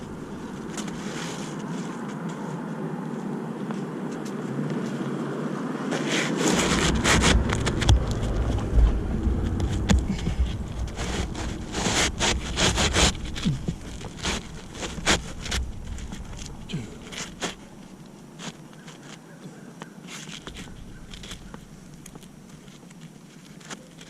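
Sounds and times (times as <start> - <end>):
low rumble: 0.0 - 1.1, 6.5 - 18.1
handling scrapes and rustles: 0.0 - 5.1, 5.9 - 24.0
wind buffeting microphone: 6.4 - 18.0, 20.5 - 22.4.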